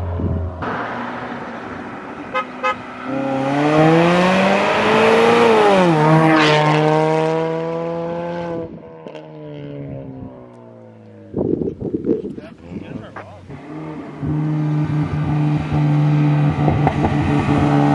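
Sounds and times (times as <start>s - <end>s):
car accelerating past: 0.0s - 11.1s, 13.5s - 17.9s.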